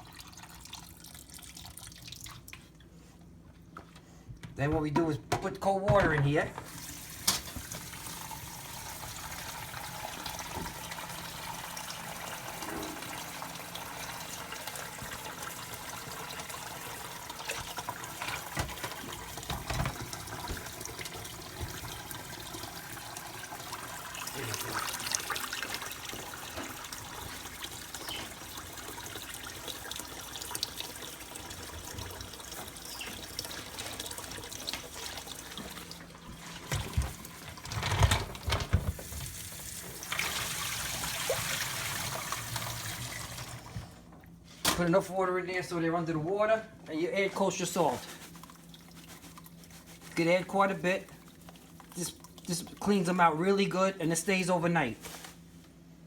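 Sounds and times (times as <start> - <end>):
tap water filling container: 5.9 - 44.4.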